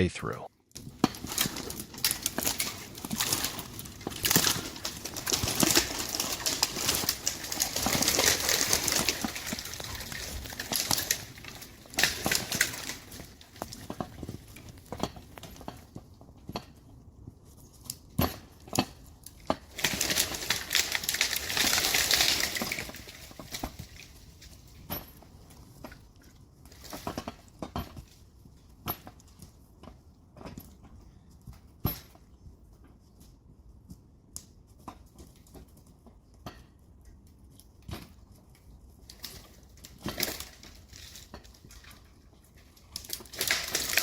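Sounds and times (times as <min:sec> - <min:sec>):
branches crackling and snapping: 0:00.7 - 0:16.0, 0:18.6 - 0:24.8, 0:37.6 - 0:44.0.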